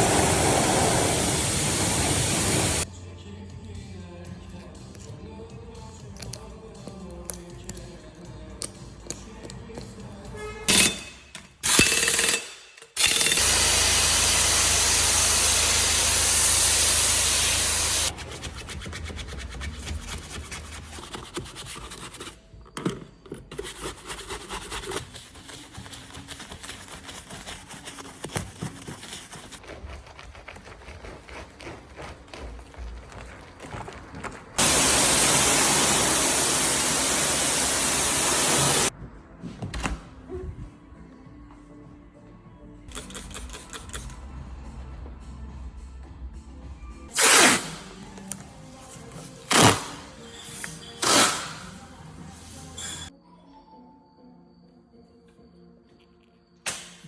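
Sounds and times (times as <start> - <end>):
loud steady spray hissing: 0.0 - 2.9, 13.4 - 18.1, 34.6 - 38.9
rubbing: 23.8 - 35.3.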